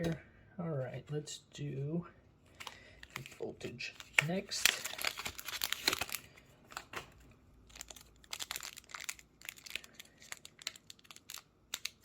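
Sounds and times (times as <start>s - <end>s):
foil wrapper crinkling: 2.6s - 7.0s, 7.7s - 12.0s.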